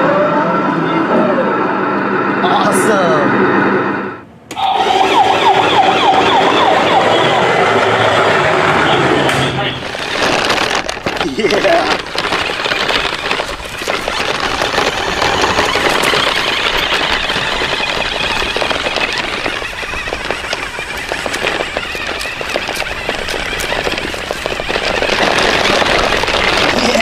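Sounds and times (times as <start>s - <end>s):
toy car motor rattling buzz: 9.8s - 27.0s.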